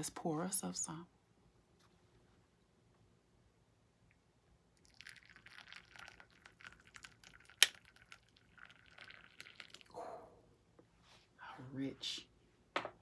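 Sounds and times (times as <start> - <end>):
tea pouring trickle: 4.8 - 9.9.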